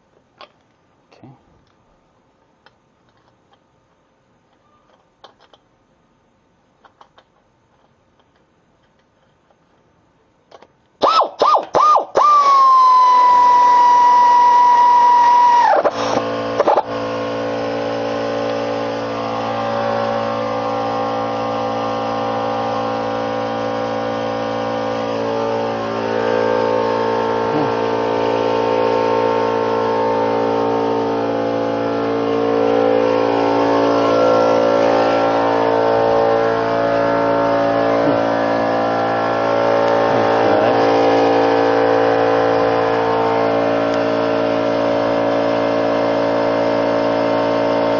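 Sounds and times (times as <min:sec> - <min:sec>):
engine running steadily: 0:10.5 - 0:47.9.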